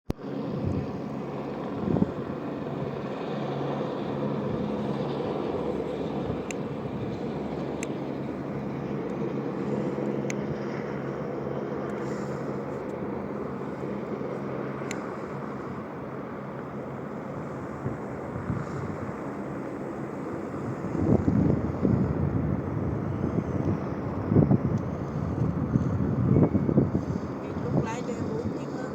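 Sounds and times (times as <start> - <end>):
helicopter drone: 0.1 - 28.9
faint clicks: 7.7 - 8.0, 14.8 - 15.1.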